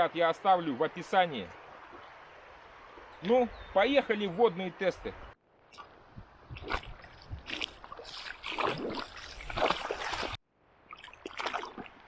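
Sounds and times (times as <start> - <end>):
water splashing: 5.7 - 12.0.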